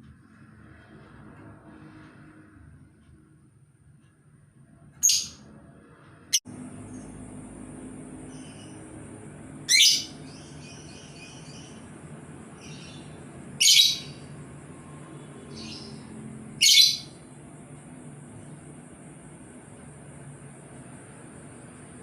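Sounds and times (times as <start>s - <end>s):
soft bird chirps: 8.2s - 8.9s, 9.7s - 14.3s
bird calling sharply: 16.6s - 17.1s.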